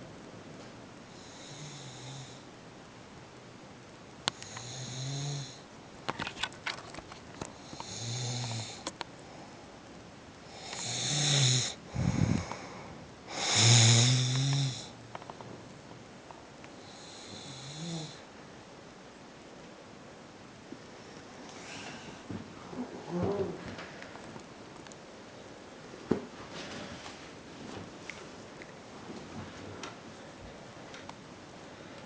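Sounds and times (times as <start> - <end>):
person snoring: 1.2 - 2.4, 4.4 - 5.6, 7.6 - 8.8, 10.5 - 15.0, 16.8 - 18.2.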